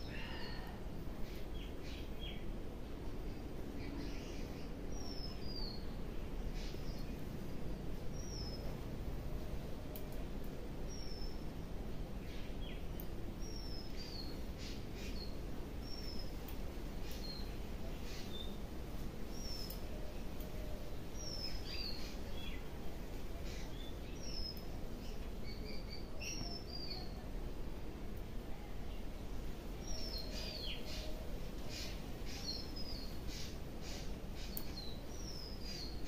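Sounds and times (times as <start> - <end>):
low background noise: 0.0 - 36.0
birds chirping: 12.2 - 27.3, 28.8 - 36.0.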